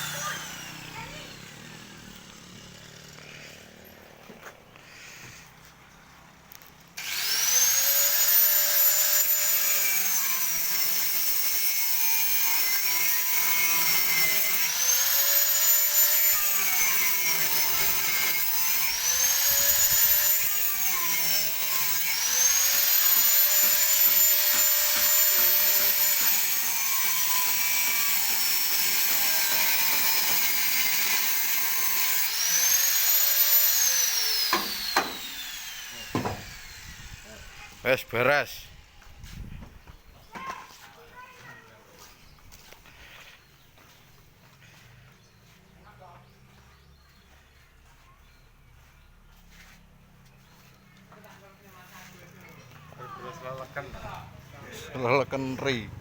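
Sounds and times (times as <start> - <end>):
angle grinder cutting metal: 0.0 - 4.2, 7.0 - 38.4.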